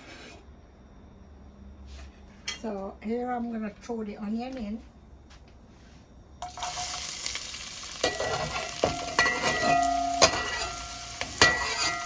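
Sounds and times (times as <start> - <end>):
onion sizzling in hot oil: 6.4 - 12.0
utensil stirring and knocking pan: 6.4 - 12.0
pan ringing: 8.0 - 12.0.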